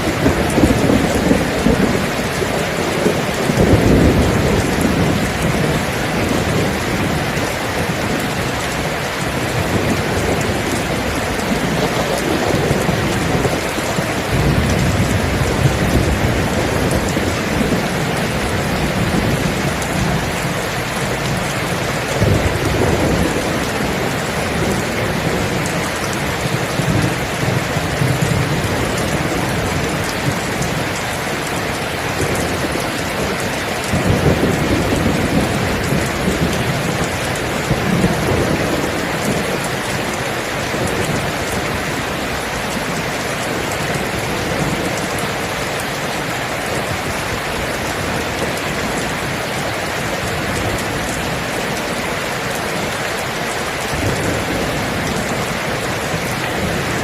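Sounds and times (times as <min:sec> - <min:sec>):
rolling thunder: 0:00.0 - 0:45.5
heavy rain: 0:00.0 - 0:57.0.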